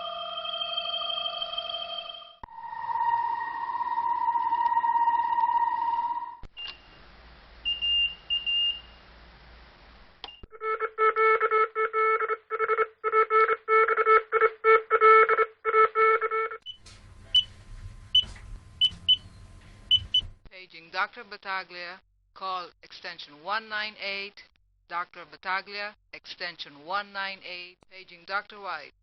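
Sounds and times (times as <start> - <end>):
steady electronic tone: 0.0 - 6.4
rapid multi-tone beeps: 19.9 - 20.3.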